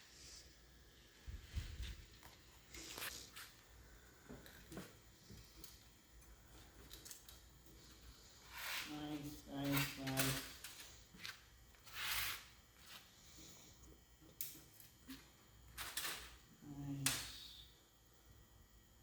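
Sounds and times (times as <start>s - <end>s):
metal scraping rasps: 8.4s - 10.8s, 11.8s - 13.0s.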